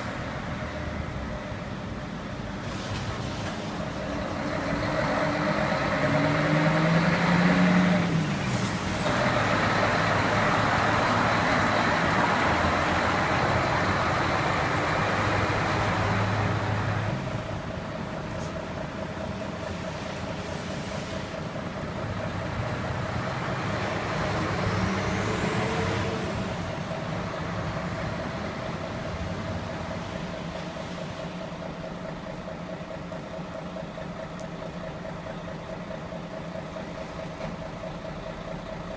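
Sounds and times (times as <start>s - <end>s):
diesel truck engines running: 0.0s - 38.9s
air brakes hissing: 8.4s - 9.1s, 19.3s - 21.4s.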